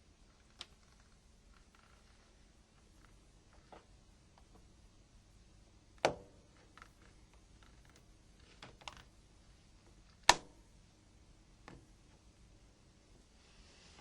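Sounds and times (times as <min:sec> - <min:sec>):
faint plastic ticks: 0:06.6 - 0:09.1
plastic clips clicking free: 0:08.7 - 0:09.1.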